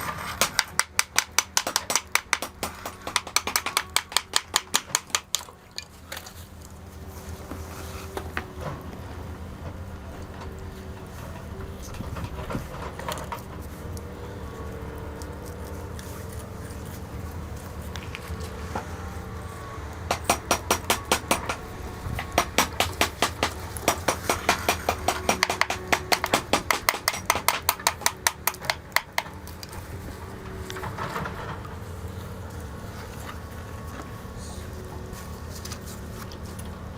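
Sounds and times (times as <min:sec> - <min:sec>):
steady low hum: 0:00.0 - 0:36.9
rapid sharp knocks: 0:20.1 - 0:21.6, 0:22.3 - 0:29.2.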